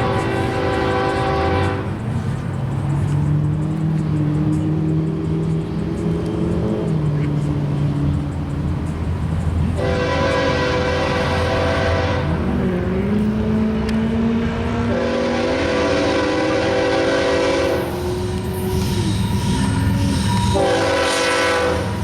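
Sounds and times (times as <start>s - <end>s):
locomotive air horn blasts: 0.0s - 2.0s, 9.8s - 12.4s, 14.8s - 19.0s, 20.4s - 22.0s
low train rumble: 0.0s - 22.0s.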